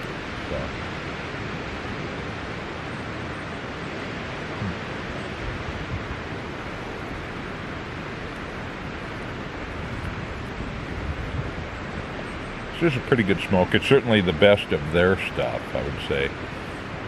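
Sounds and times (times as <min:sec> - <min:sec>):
wind rushing: 0:00.0 - 0:13.1
surf on rocky shore: 0:00.0 - 0:17.0.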